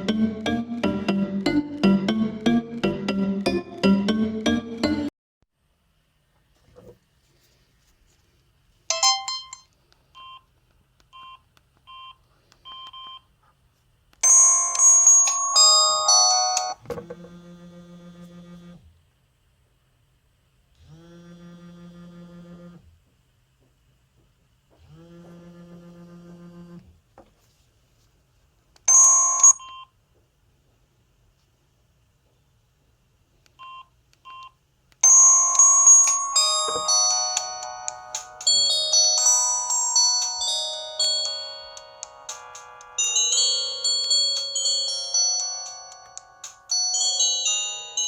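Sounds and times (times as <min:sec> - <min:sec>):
polyphonic phone ringtone: 0:08.9 - 0:09.6, 0:14.2 - 0:16.8, 0:28.9 - 0:29.8, 0:35.0 - 0:48.0.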